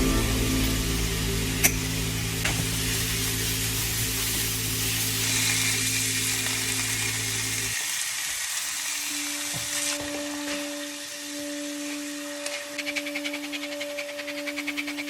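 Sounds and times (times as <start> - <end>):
held music tones: 0.0 - 7.7
low background music: 0.0 - 7.8
food sizzling in a frying pan: 0.0 - 12.4.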